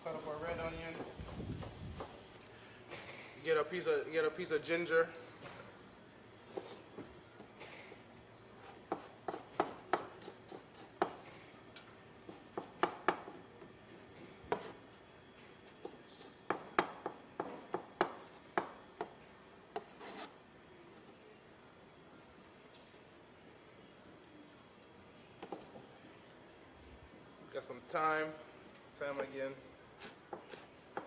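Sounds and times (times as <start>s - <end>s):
knife scraping board: 19.8s - 20.3s.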